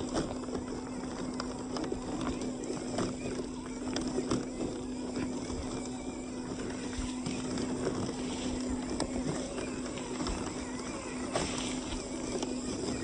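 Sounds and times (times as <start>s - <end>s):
toy truck motor humming: 0.0s - 13.0s.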